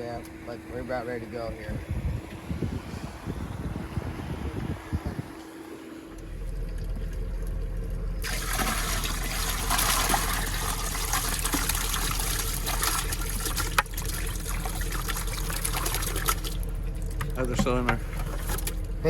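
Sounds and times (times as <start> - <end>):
low steady hum: 0.0 - 19.0
water pouring and trickling: 6.2 - 18.9.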